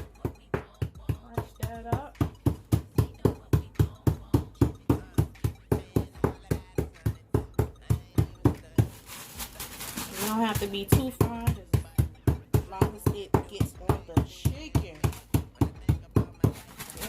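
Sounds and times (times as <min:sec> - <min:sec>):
scoop pounding chips in bag: 0:07.8 - 0:11.5, 0:15.0 - 0:17.0.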